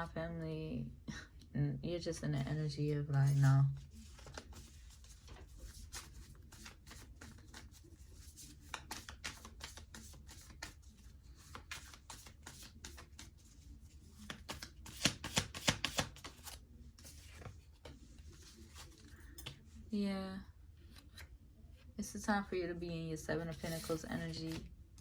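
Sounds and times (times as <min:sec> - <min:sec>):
cards being shuffled: 0:03.2 - 0:19.6, 0:23.4 - 0:24.7.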